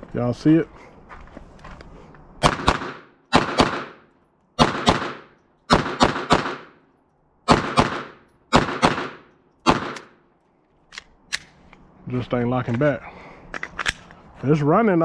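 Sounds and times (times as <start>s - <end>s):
pistol shots with echo: 2.4s - 6.8s, 7.4s - 10.2s.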